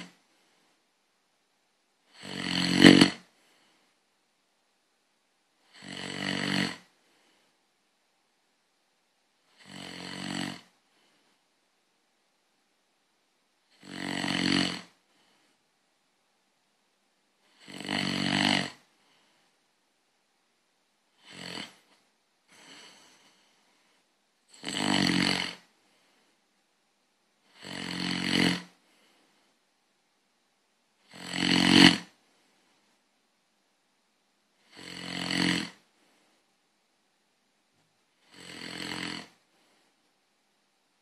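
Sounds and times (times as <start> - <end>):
person snoring: 0.0 - 0.2, 2.1 - 3.8, 5.6 - 7.4, 9.5 - 11.2, 13.7 - 15.5, 17.4 - 18.9, 21.1 - 23.7, 24.5 - 25.8, 27.4 - 29.1, 31.0 - 32.2, 34.6 - 35.9, 38.2 - 39.5.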